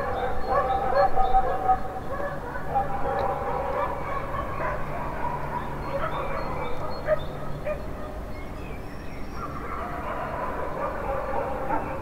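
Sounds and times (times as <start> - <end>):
dogs barking: 0.0 - 8.2, 9.4 - 12.0
low city rumble: 0.0 - 12.0.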